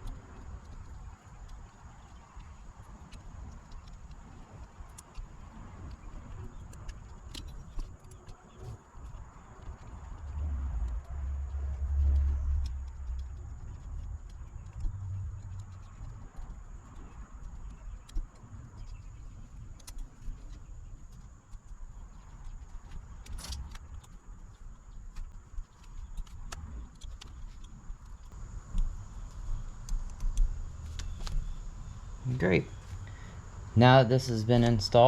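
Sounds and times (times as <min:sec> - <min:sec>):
low steady rumble: 0:00.0 - 0:35.0.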